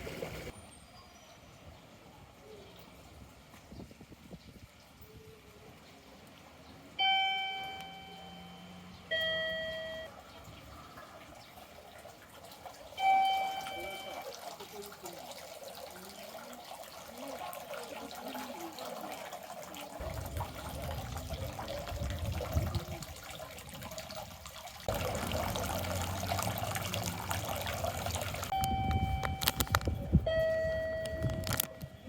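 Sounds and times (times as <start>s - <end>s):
clear steady tones: 7.0s - 10.1s.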